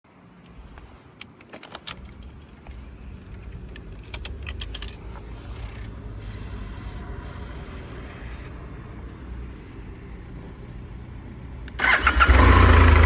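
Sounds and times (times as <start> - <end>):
motorcycle engine rumble: 0.4 - 13.0
metallic clicks and jingles: 0.5 - 6.0.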